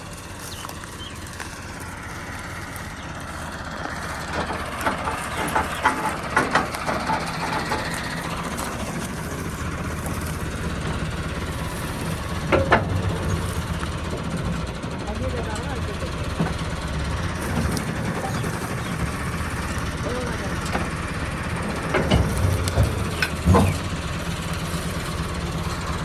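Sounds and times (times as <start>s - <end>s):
tractor engine running: 0.0s - 26.0s
clattering knocks: 4.2s - 9.5s, 21.6s - 24.3s.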